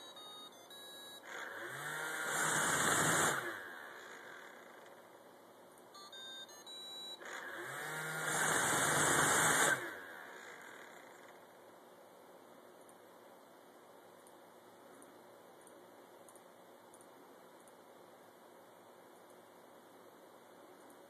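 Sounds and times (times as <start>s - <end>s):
electronic beeps: 0.0s - 1.4s, 6.0s - 7.4s
robot vacuum motors whirring: 1.3s - 5.0s, 7.2s - 11.4s.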